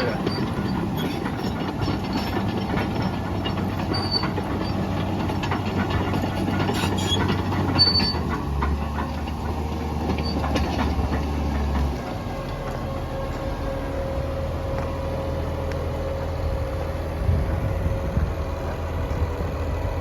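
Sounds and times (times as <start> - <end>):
steel tracks clattering: 0.0 - 12.4
diesel engine running: 0.0 - 20.0.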